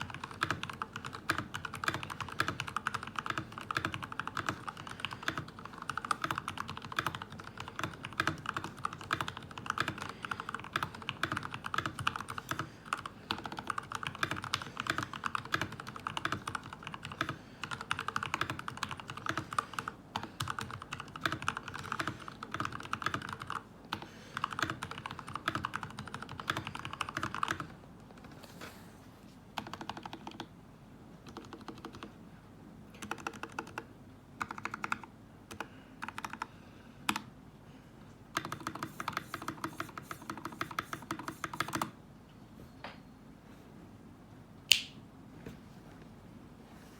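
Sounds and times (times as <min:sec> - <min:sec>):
fast typing on mechanical keyboard: 0:00.0 - 0:28.4, 0:29.6 - 0:30.5, 0:31.3 - 0:32.1, 0:33.0 - 0:36.5, 0:38.4 - 0:42.0.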